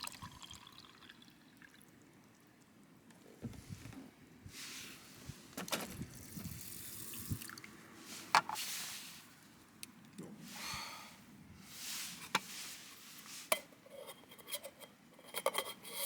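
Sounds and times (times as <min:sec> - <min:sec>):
water pouring in spurts: 0:00.0 - 0:02.6, 0:06.0 - 0:07.8.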